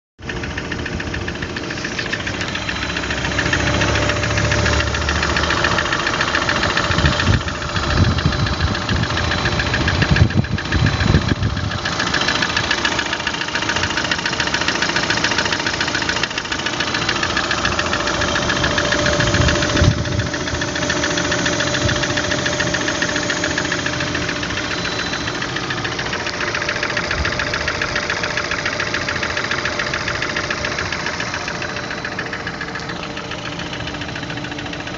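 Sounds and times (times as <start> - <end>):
engine running with knocking: 0.2 - 34.9.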